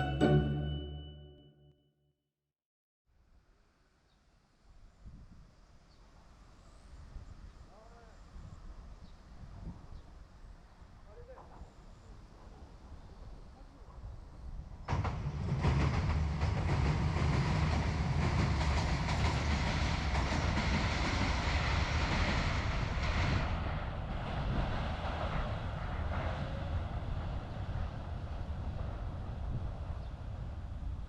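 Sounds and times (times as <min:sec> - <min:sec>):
train rumbling over bridge: 0:00.0 - 0:01.0, 0:13.7 - 0:31.0.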